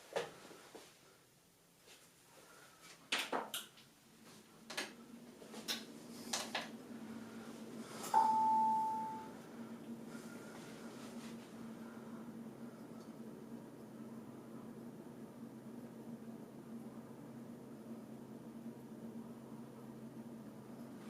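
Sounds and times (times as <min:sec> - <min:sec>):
computer fans humming: 0:00.0 - 0:21.0
electronic beep: 0:08.2 - 0:09.3.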